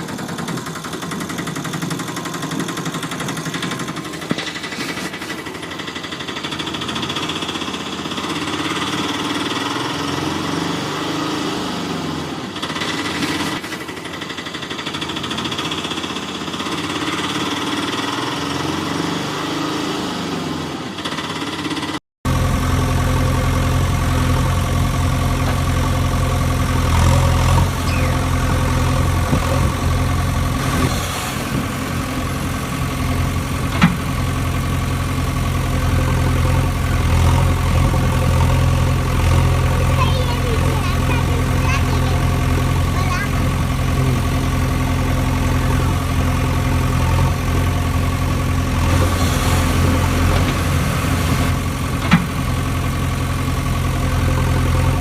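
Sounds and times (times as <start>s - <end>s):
deep engine drone: 22.3s - 55.0s
toy vehicle motors whining: 27.6s - 29.0s.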